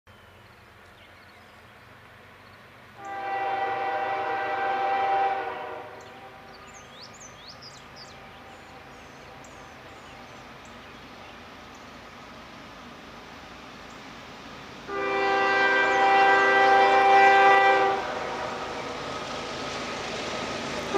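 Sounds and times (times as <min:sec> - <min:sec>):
locomotive air horn blast: 0:03.0 - 0:06.5, 0:14.9 - 0:19.0.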